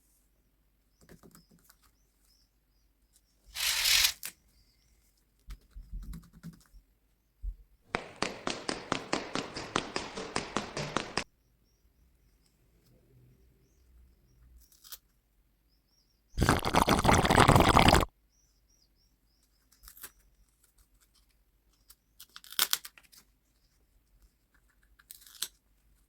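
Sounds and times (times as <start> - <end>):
paper rustling: 3.6 - 4.3.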